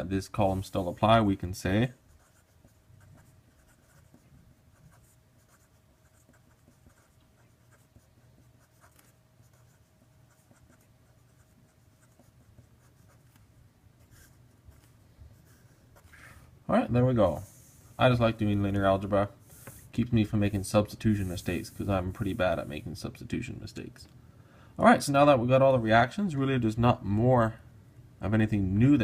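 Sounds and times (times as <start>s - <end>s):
low steady hum: 0.0s - 29.0s
pen scratching on paper: 2.1s - 13.4s, 14.0s - 16.4s.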